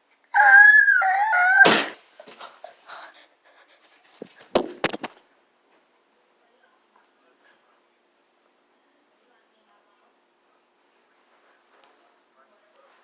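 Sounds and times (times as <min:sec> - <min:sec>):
faint rustles: 0:10.8 - 0:12.2.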